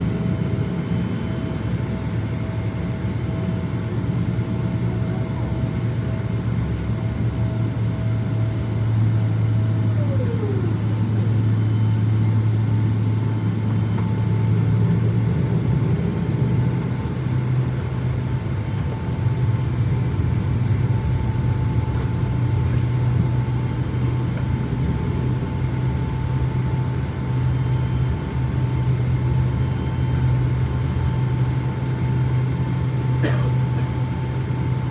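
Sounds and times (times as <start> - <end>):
jet engines heard from cabin: 0.0 - 34.9
whining engine tones: 9.1 - 34.9.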